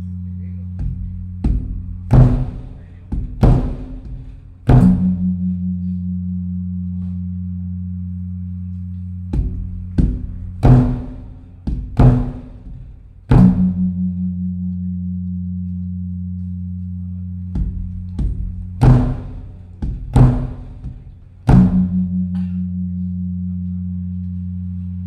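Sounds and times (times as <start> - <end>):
deep ringing drum hum: 0.5 - 8.4, 9.0 - 24.6
large drum beaten by hand: 0.7 - 5.8, 9.3 - 14.4, 17.5 - 22.6.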